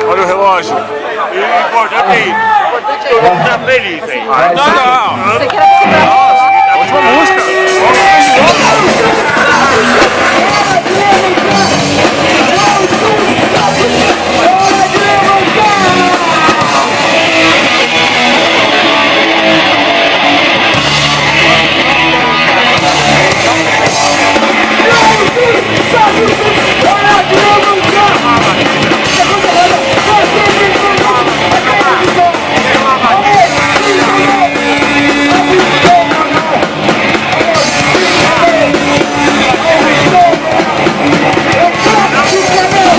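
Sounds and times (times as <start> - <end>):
punk rock band playing live: 3.0 - 42.9
electric guitar: 5.1 - 42.9
person singing: 7.3 - 19.0.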